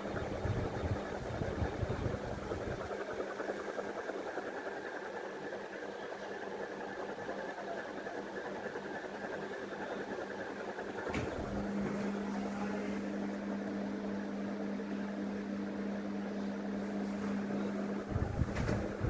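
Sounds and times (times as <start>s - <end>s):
electrical hum: 0.0s - 4.4s, 8.1s - 19.0s
ceiling fan whirring: 0.0s - 19.0s
fan switch click: 11.1s - 12.5s.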